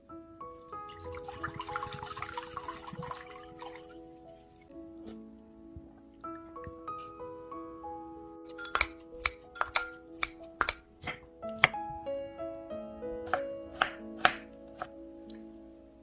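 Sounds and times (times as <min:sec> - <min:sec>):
background music: 0:00.0 - 0:16.0
knife chopping on cutting board: 0:08.7 - 0:11.7, 0:13.3 - 0:14.9.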